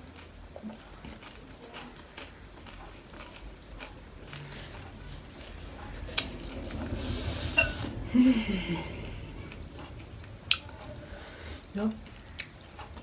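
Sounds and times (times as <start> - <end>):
person chewing crunchy food: 0.0 - 5.4.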